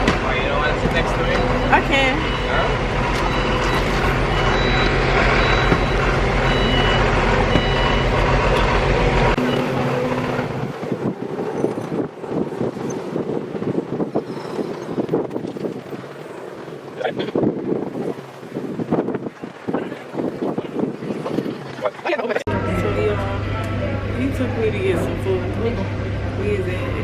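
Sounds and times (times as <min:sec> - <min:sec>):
uneven rumbling noise: 0:00.0 - 0:27.0
vehicle engine humming: 0:00.0 - 0:27.0.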